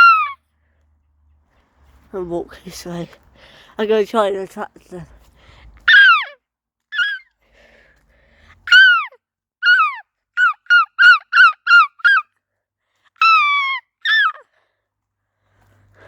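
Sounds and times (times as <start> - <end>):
seagull calling: 0.0 - 0.4, 7.0 - 7.3.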